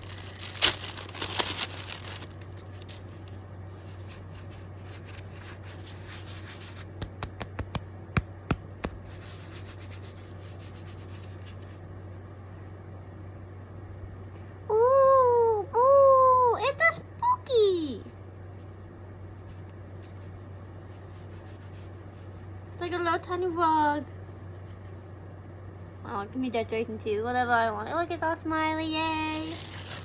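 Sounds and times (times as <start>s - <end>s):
packaging rustling: 0.0s - 6.9s, 29.3s - 30.0s
steady low hum: 0.0s - 30.0s.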